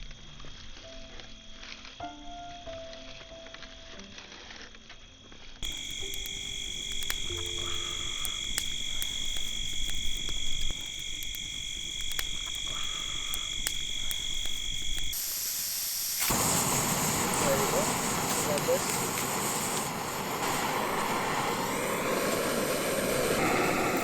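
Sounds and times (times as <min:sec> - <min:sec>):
faint clicks: 0:05.6 - 0:15.2
frogs and insects trilling: 0:05.6 - 0:20.9.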